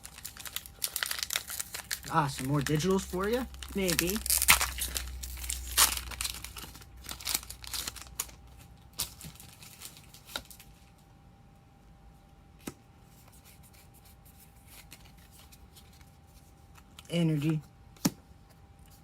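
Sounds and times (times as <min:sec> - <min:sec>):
foil pack tearing and crinkling: 0:00.0 - 0:08.4, 0:09.0 - 0:10.7.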